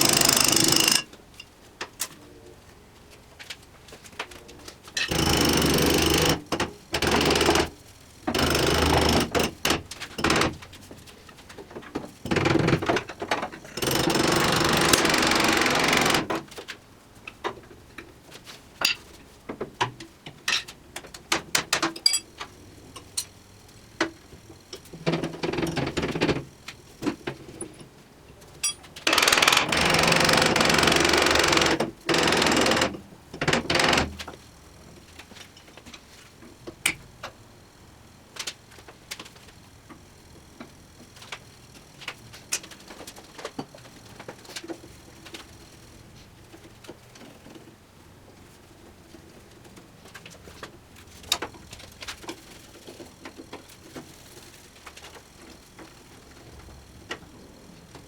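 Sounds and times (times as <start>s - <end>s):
power tool running: 0.0s - 1.0s, 5.1s - 6.4s, 13.7s - 16.3s, 28.6s - 34.2s.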